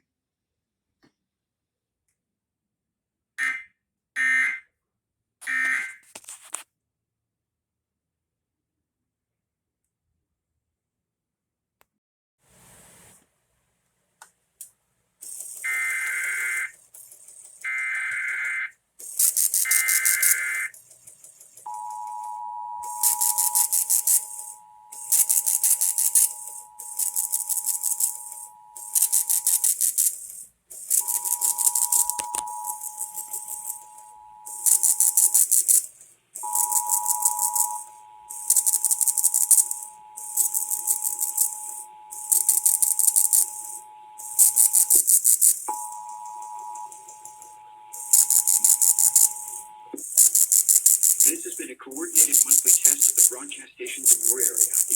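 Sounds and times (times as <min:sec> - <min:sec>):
pulsing hissing rattle noise: 0:15.2 - 0:15.7, 0:19.0 - 0:21.7, 0:22.8 - 0:45.8, 0:46.8 - 0:54.9
data burst tones: 0:15.3 - 0:16.8, 0:17.6 - 0:20.8, 0:21.7 - 0:54.9
two-tone attention signal: 0:15.7 - 0:16.7, 0:19.5 - 0:20.8, 0:21.7 - 0:30.1, 0:30.9 - 0:35.8, 0:36.4 - 0:54.9.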